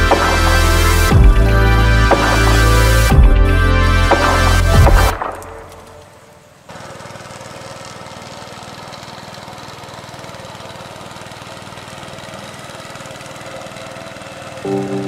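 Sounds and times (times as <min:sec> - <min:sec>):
music: 0:00.0 - 0:06.0, 0:14.7 - 0:15.0
small engine chugging: 0:05.6 - 0:15.0.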